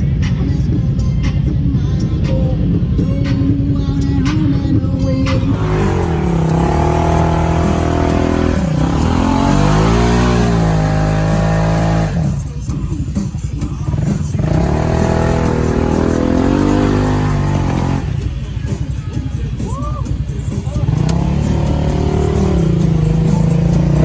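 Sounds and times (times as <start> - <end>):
off-road vehicle engine revving: 5.2 - 24.0.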